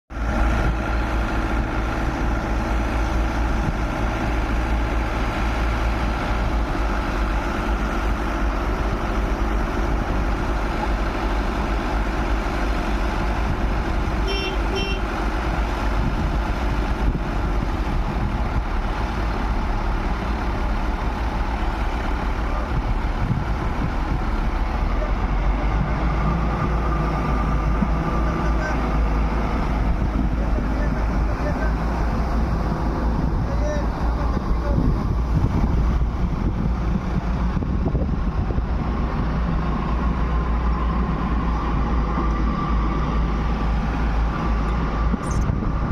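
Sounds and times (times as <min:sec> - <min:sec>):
diesel machinery rumbling: 0:00.1 - 0:45.9
high beeps: 0:45.2 - 0:45.5.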